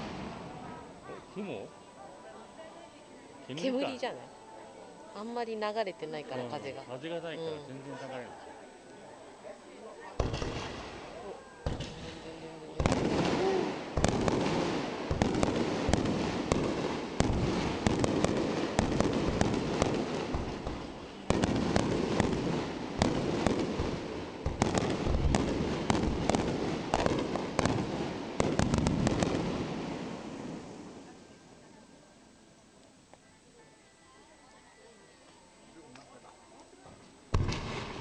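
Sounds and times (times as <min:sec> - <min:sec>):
fireworks booming and crackling: 0:00.0 - 0:01.0, 0:10.2 - 0:31.1, 0:37.3 - 0:38.0.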